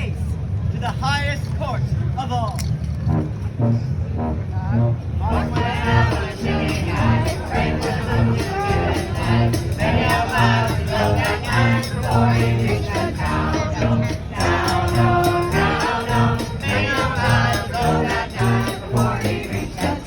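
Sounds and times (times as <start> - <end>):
live band music: 3.0 - 20.0
jingling percussion: 5.2 - 20.0.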